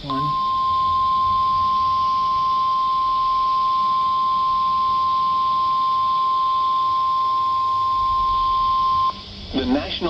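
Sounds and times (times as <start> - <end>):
loud pure warning tone: 0.0 - 9.4
radio hiss: 9.0 - 10.0.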